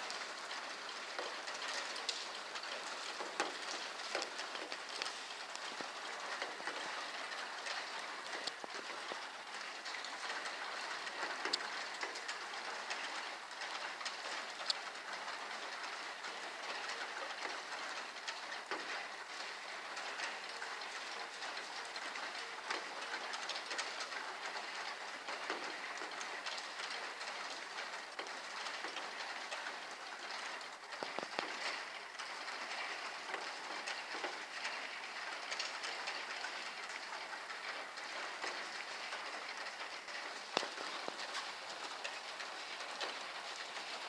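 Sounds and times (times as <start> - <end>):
heavy rain falling: 0.0 - 44.0
raindrops hitting hard surfaces: 0.0 - 44.0.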